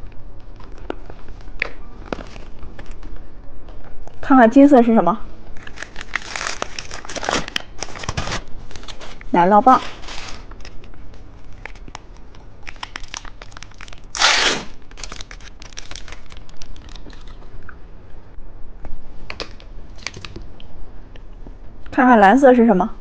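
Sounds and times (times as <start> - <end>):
packaging tearing: 5.6 - 9.2, 11.5 - 17.5
packaging crinkling: 5.6 - 17.7.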